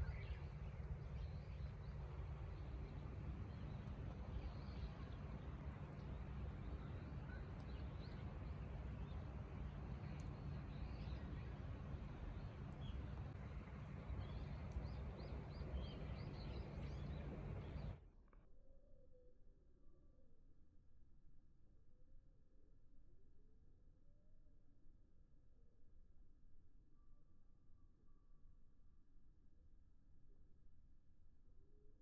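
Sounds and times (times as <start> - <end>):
small birds chirping: 0.0 - 18.0
wind rumbling on microphone: 0.0 - 18.0.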